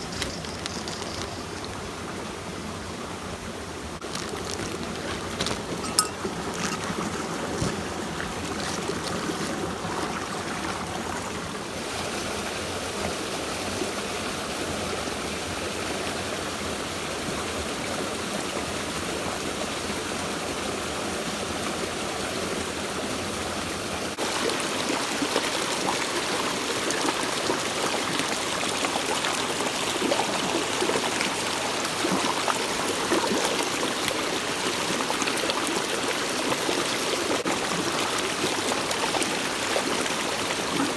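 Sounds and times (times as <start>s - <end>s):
stream water flowing over rocks: 0.0s - 40.9s.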